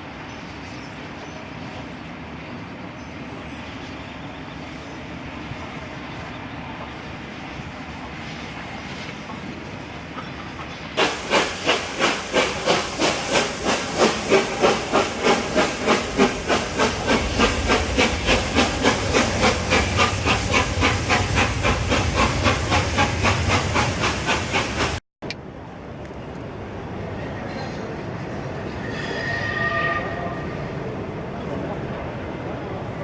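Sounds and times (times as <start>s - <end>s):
low rumble of train: 0.0s - 33.0s
steam locomotive chuffing: 10.1s - 25.0s.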